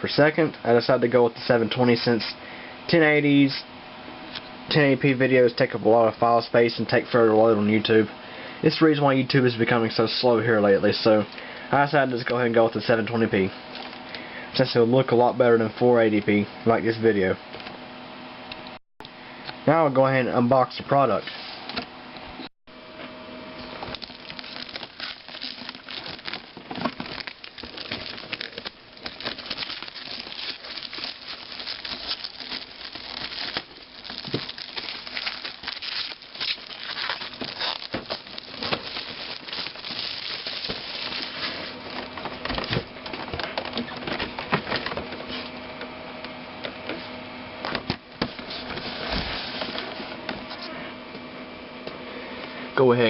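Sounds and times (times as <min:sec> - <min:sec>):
plastic wrap and cardboard crinkling: 0:23.8 - 0:42.9.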